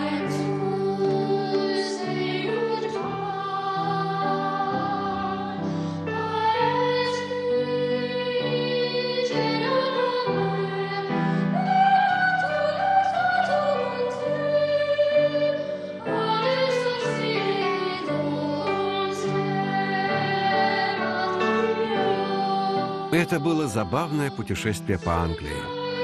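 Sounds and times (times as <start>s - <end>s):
choir singing: 23.1s - 25.8s.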